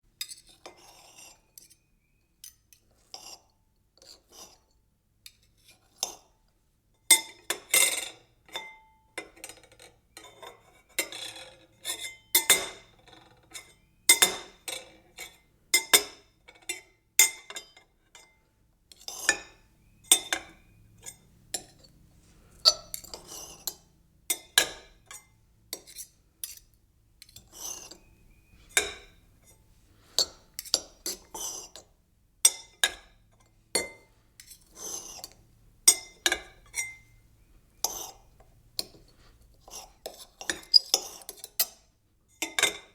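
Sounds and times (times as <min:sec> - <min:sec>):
knife clinking and tapping: 0:33.8 - 0:37.2, 0:37.8 - 0:39.0.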